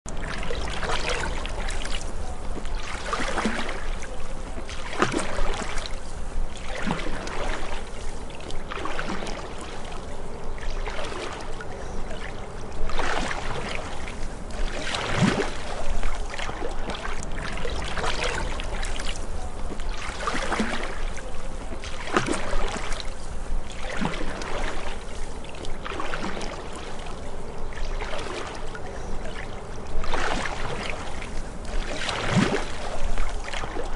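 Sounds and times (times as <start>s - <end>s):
paddle strokes splashing: 0.1s - 33.9s.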